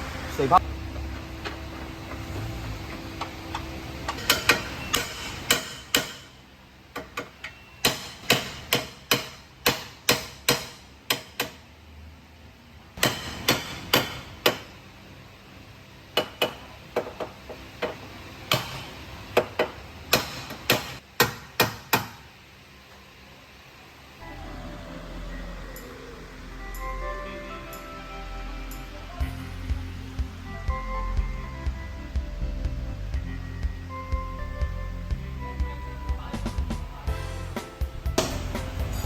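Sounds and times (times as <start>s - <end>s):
hammer blows: 28.7s - 39.0s.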